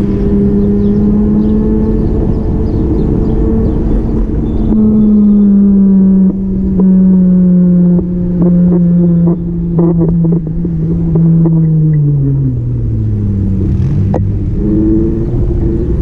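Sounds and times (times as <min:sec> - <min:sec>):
motor vehicle engine running: 0:00.0 - 0:16.0.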